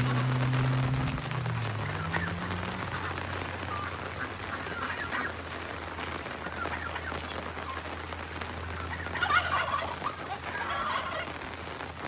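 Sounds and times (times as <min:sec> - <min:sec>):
poultry calling: 0:00.0 - 0:05.5, 0:06.3 - 0:07.8, 0:08.7 - 0:11.4
rain pattering: 0:00.0 - 0:12.0.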